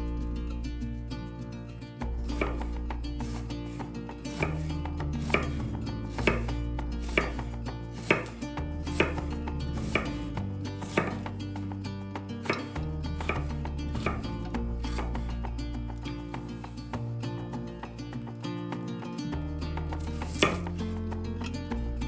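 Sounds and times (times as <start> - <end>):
knife chopping on cutting board: 2.3 - 3.4, 4.3 - 11.3, 12.4 - 14.3, 14.9 - 15.2, 20.2 - 20.8.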